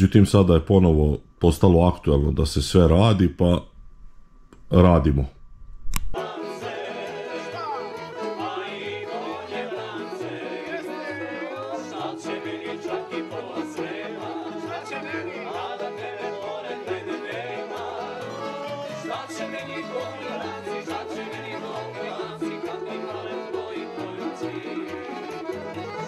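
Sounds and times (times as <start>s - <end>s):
song with singing voice: 6.2s - 26.0s.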